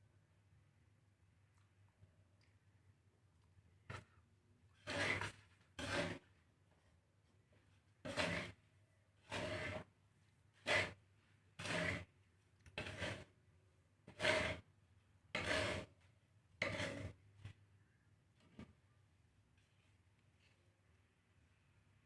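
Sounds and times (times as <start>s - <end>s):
dry seeds stirred in a pan: 4.8s - 6.3s, 8.0s - 8.6s, 9.2s - 9.9s, 10.5s - 11.0s, 11.6s - 12.1s, 12.7s - 13.3s, 14.0s - 14.7s, 15.4s - 16.0s, 16.6s - 17.2s.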